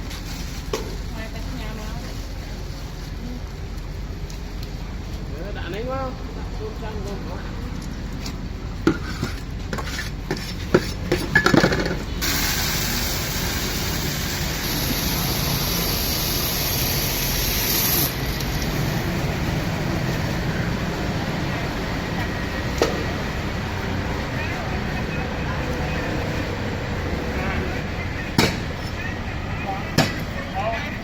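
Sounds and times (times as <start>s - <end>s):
low steady background noise: 0.0s - 17.5s
sharp knocks and clatters: 8.8s - 12.2s
loud steady hiss: 11.3s - 29.0s.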